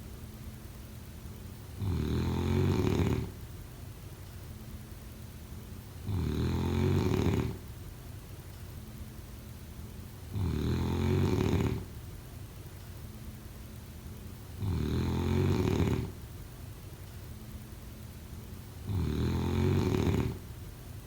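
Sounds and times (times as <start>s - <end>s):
person snoring: 1.8s - 3.3s, 6.1s - 7.6s, 10.3s - 11.9s, 14.6s - 16.2s, 18.9s - 20.4s.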